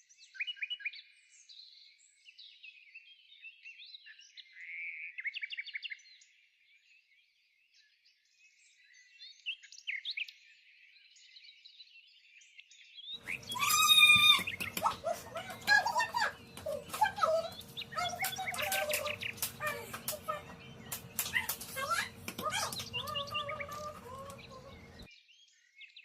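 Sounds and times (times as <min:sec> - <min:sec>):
small birds chirping: 0:13.2 - 0:25.1.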